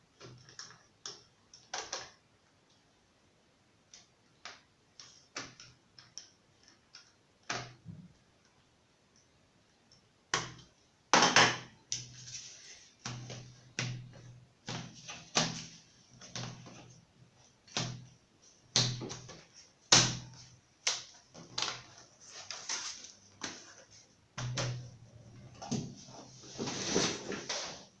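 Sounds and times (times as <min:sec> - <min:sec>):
hands handling laptop parts: 0:18.7 - 0:24.9.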